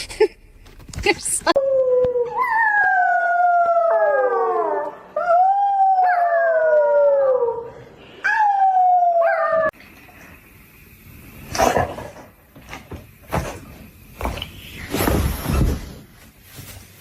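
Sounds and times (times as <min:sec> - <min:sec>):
dog howling: 0:01.6 - 0:09.8.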